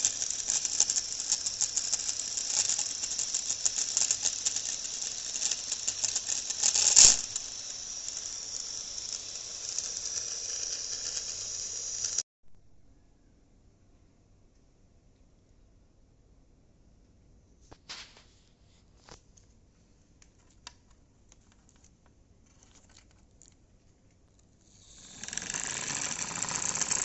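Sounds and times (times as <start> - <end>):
small electric fan motor rattling: 0.0 - 12.2, 24.6 - 27.0.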